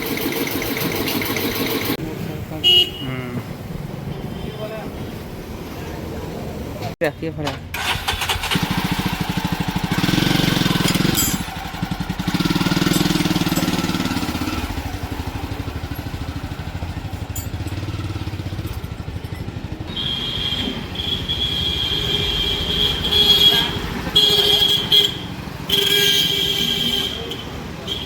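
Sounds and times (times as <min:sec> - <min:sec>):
motorcycle engine revving and idling: 0:00.0 - 0:02.0, 0:07.8 - 0:26.4.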